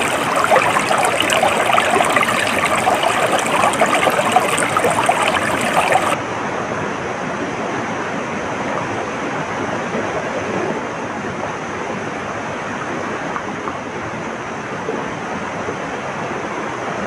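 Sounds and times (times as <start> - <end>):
flowing water rushing: 0.0 - 6.2.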